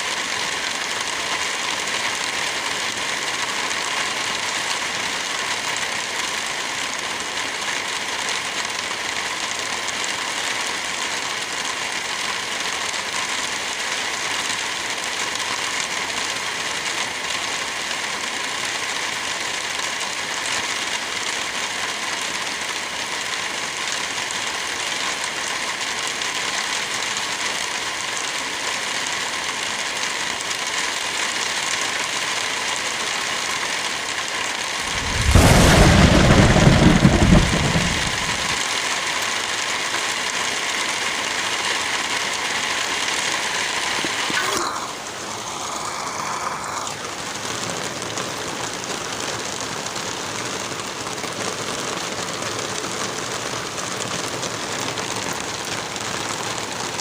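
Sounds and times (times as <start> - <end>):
light rain falling: 0.0 - 57.0
wind through forest trees: 34.8 - 38.7.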